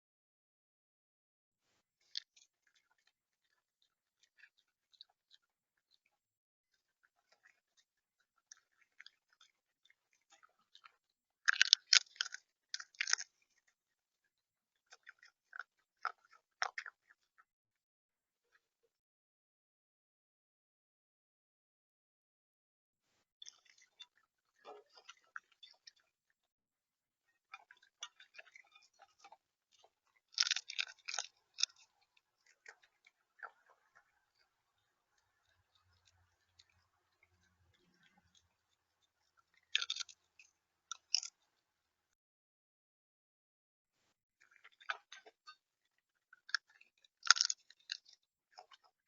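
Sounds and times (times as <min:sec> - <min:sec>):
bird pecking and crunching seed: 0:01.8 - 0:17.5, 0:23.4 - 0:26.5, 0:27.2 - 0:41.7, 0:44.4 - 0:49.0
bird pecking and cracking seed: 0:08.5 - 0:13.7, 0:27.6 - 0:34.5, 0:39.6 - 0:40.2, 0:40.9 - 0:41.4, 0:46.4 - 0:48.9.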